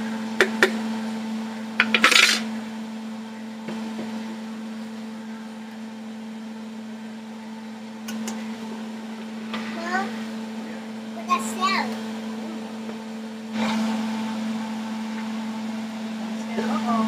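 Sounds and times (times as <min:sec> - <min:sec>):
steady low hum: 0:00.0 - 0:13.6
dishes and utensils clinking: 0:01.8 - 0:02.5.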